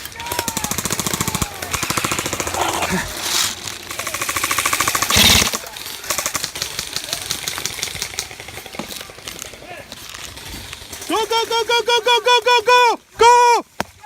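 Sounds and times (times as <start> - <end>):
airsoft guns firing bursts: 0.0 - 11.0.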